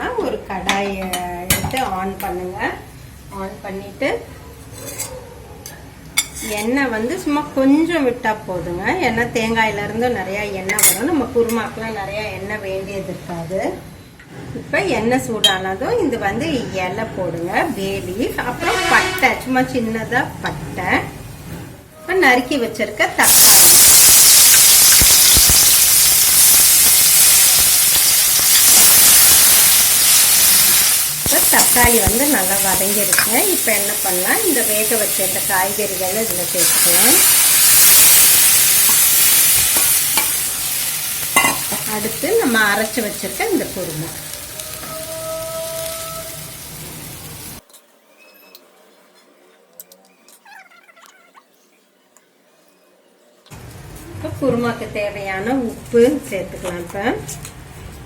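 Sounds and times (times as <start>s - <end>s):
tomatoes sizzling in hot oil: 23.2s - 47.6s.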